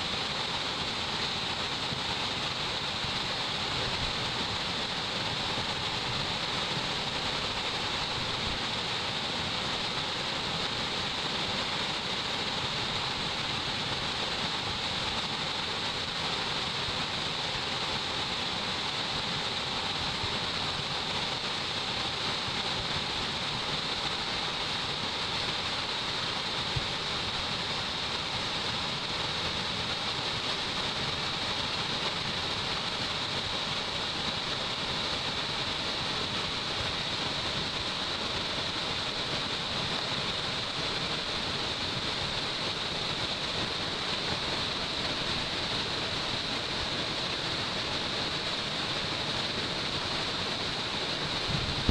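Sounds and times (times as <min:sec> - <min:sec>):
waterfall splashing: 0:00.0 - 0:51.9.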